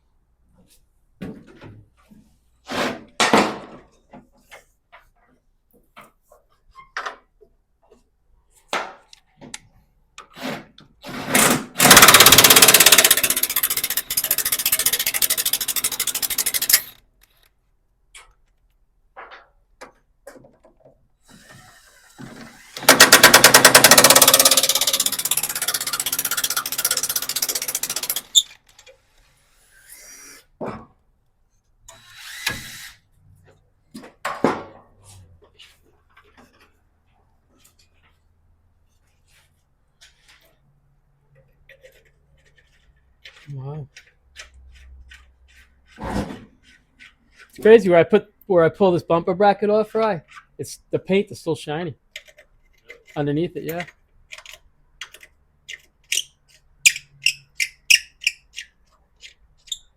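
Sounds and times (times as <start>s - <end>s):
power impact wrench: 11.3s - 17.0s, 21.4s - 28.4s, 31.9s - 33.0s.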